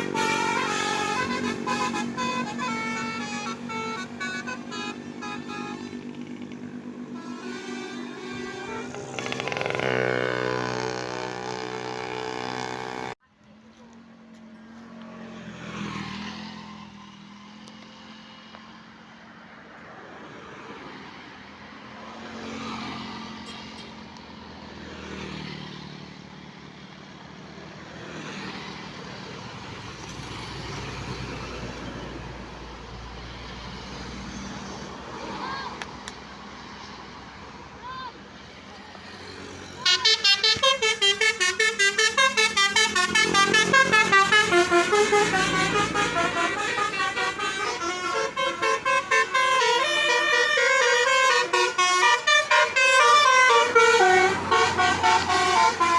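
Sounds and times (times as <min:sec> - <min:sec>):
bus horn multi-tone melody: 0:00.0 - 0:13.2, 0:39.2 - 0:55.9
vehicle engines passing: 0:00.0 - 0:55.9.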